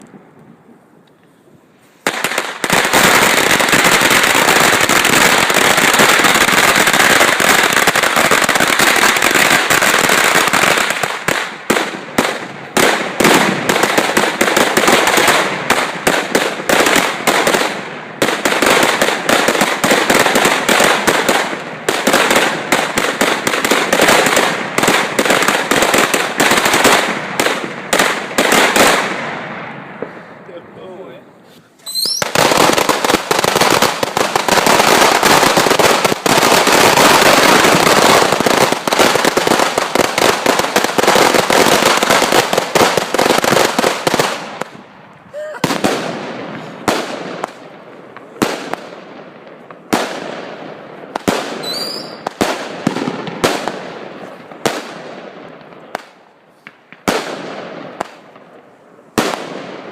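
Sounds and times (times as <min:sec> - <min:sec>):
firecrackers banging: 0:01.9 - 0:59.9.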